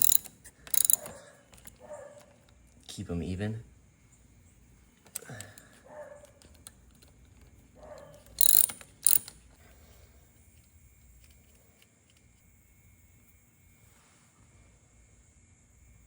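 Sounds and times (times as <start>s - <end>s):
sharp metallic bursts: 0.0s - 1.3s, 7.9s - 9.4s
hand ratchet clicking: 0.0s - 2.6s, 5.0s - 9.6s.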